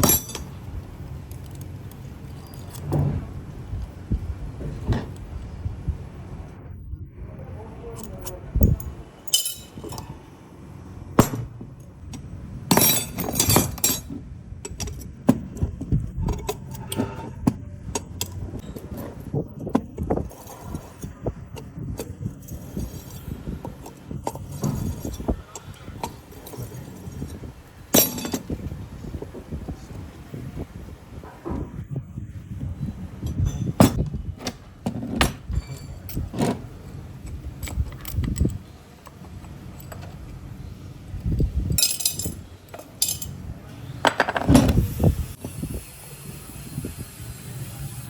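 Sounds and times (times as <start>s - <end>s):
metal parts and tools clinking: 0.0s - 3.4s, 7.9s - 10.3s, 11.3s - 28.8s, 32.8s - 45.1s.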